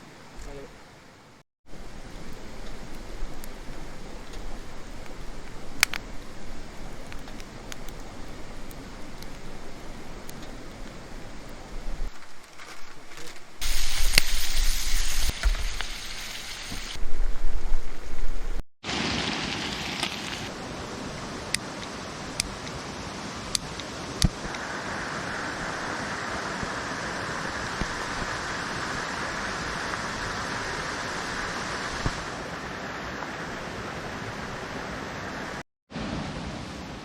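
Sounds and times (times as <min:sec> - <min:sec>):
running water rushing: 0:13.6 - 0:17.0, 0:18.8 - 0:37.0.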